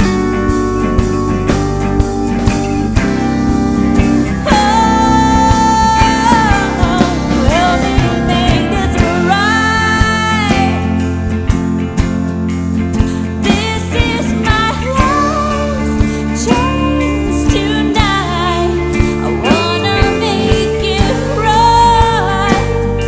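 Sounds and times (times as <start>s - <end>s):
country band playing: 0.0s - 23.0s
steady drum beat: 0.0s - 23.0s
person singing: 4.3s - 11.5s, 13.0s - 23.0s.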